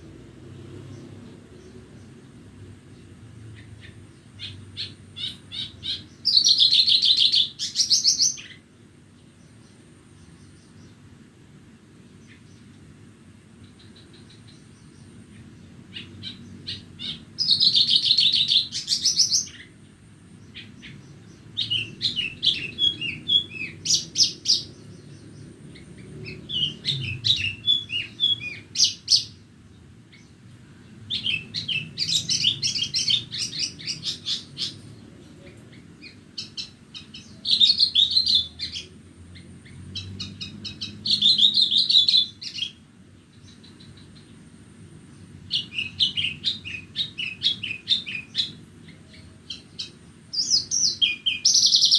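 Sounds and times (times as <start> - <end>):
bush lark chirping trills: 2.9 - 8.7, 13.6 - 29.4, 31.1 - 39.0, 39.6 - 44.4, 45.1 - 51.9.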